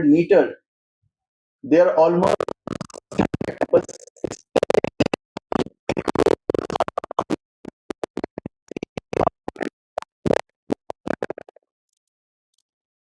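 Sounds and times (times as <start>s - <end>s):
chopped voice fragments: 1.7s - 11.6s.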